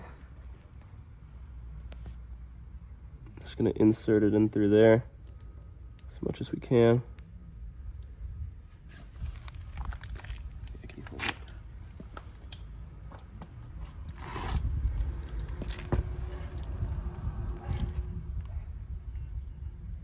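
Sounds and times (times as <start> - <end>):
scraping rustle: 8.7 - 18.2
light clicks and rustles: 8.8 - 19.5
low rumble: 13.5 - 20.0.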